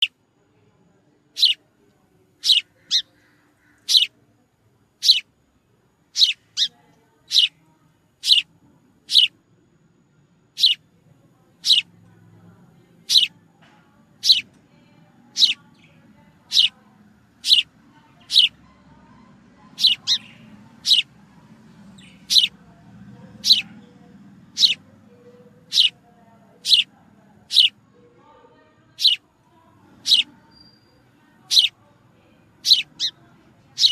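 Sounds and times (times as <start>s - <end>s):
sparrow chirping: 1.3s - 1.6s, 2.4s - 4.1s, 5.0s - 5.3s, 6.1s - 7.6s, 8.2s - 9.3s, 10.5s - 10.8s, 11.5s - 11.9s, 13.0s - 13.4s, 14.1s - 14.6s, 15.2s - 27.8s, 28.9s - 29.2s, 29.8s - 31.9s, 32.5s - 33.9s.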